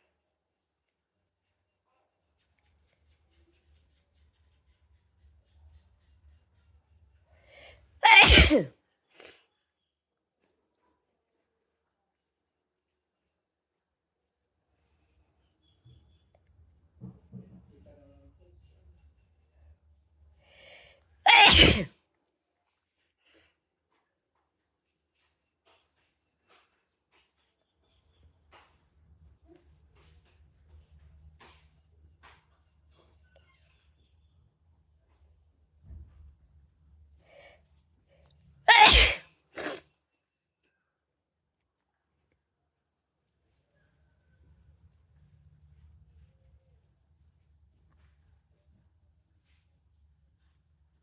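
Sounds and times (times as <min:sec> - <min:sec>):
person sneezing: 0:08.0 - 0:09.3, 0:21.3 - 0:21.9, 0:38.7 - 0:39.8.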